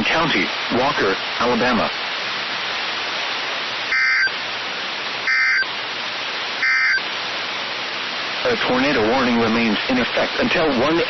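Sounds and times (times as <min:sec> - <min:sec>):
radio static hiss: 0:00.0 - 0:11.0
warbling data bursts: 0:03.9 - 0:04.4, 0:05.2 - 0:05.7, 0:06.6 - 0:07.0.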